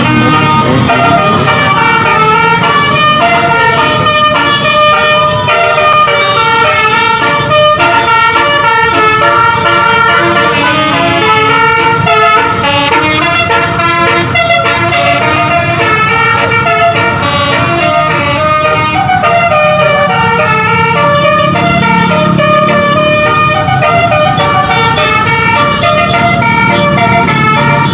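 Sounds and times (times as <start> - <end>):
bus horn playing a melody: 0.0 - 27.9.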